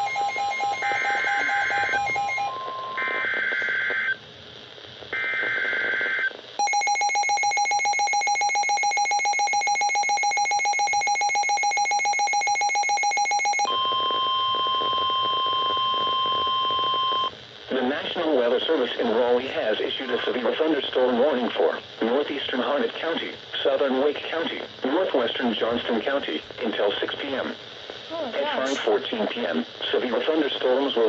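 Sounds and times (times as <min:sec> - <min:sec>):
fast-pulsing buzzing alarm tone: 0:05.2 - 0:14.8.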